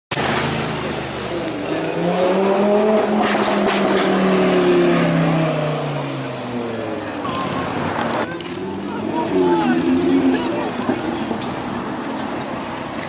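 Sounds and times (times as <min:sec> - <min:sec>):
sports car engine through loud exhaust: 0:00.1 - 0:08.0.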